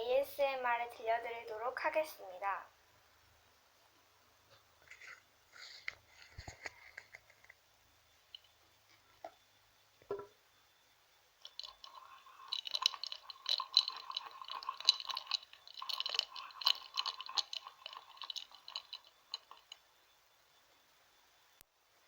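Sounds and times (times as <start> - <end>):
ice cubes clinking in glass: 11.5 - 19.8.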